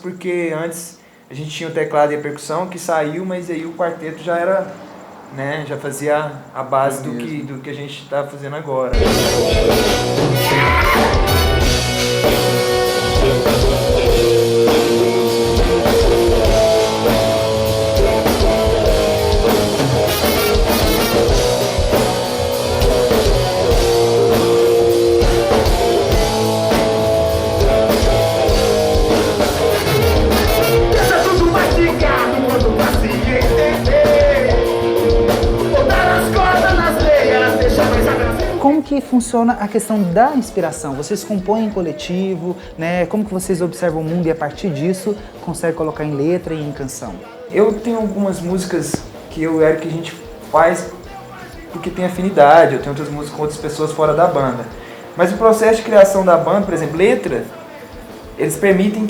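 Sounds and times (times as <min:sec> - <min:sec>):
person singing: 0:09.0 - 0:11.6, 0:12.2 - 0:19.7, 0:29.0 - 0:38.7
rock band music: 0:09.0 - 0:38.7.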